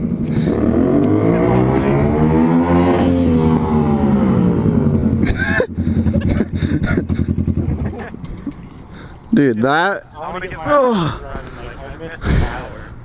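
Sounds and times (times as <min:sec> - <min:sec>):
motorcycle engine slowing to idle: 0:04.6 - 0:09.2.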